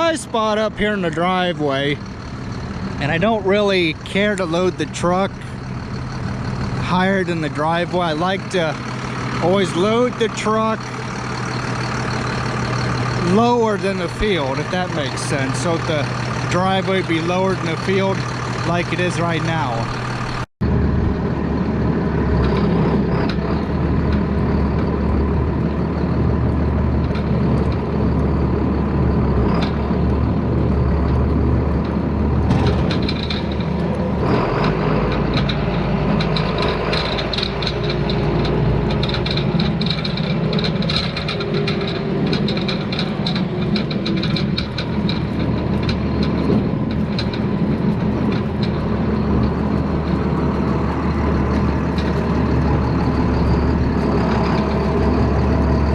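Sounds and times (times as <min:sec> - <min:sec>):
tractor diesel engine running: 0:00.0 - 0:55.9
rattling and clattering: 0:22.4 - 0:55.9.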